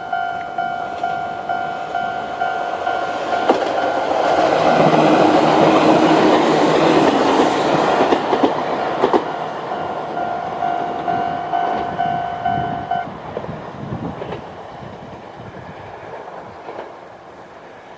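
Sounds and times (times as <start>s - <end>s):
level crossing warning bell: 0.0s - 5.4s, 9.4s - 13.1s
train wheels rushing: 0.0s - 17.9s.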